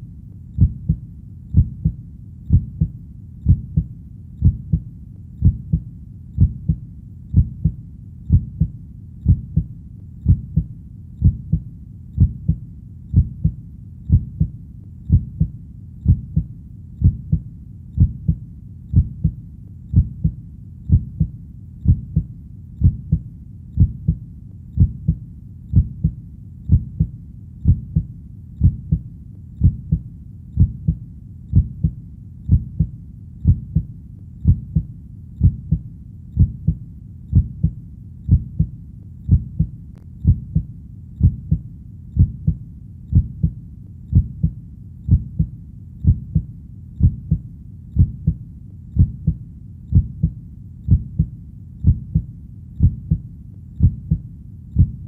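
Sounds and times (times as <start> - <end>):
heartbeat thuds: 0.6 - 55.0.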